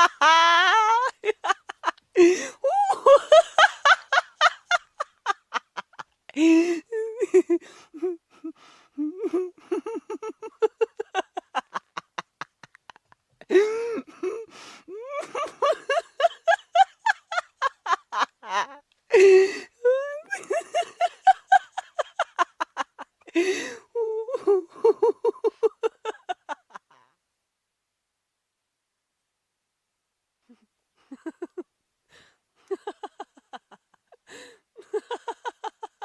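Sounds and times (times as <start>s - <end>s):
person laughing hard: 0.0s - 27.1s, 31.0s - 31.7s, 32.6s - 36.0s
loud gasping in-breaths: 2.2s - 2.8s, 6.3s - 7.0s, 13.4s - 15.5s, 19.1s - 19.8s, 23.3s - 24.0s, 34.2s - 34.7s.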